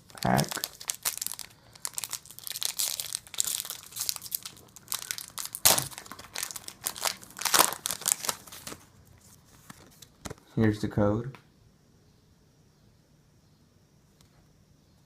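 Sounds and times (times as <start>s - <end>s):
foil wrapper crinkling and tearing: 0.0s - 8.9s.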